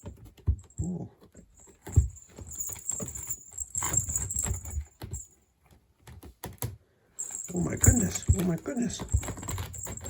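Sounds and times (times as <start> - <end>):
cat scuffling with toy: 1.6 - 5.3, 7.2 - 10.0.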